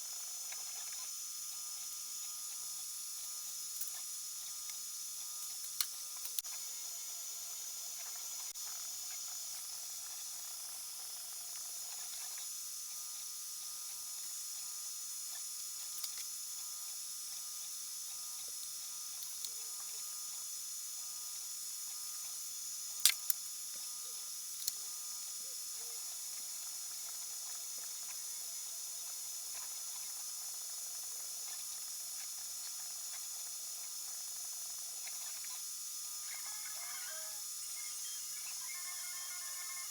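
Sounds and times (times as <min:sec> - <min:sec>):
printer motors and fans whining: 0:23.8 - 0:39.9.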